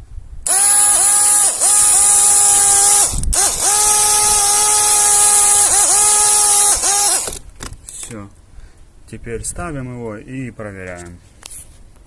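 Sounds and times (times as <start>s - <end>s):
air compressor motor whine: 0.4s - 7.4s.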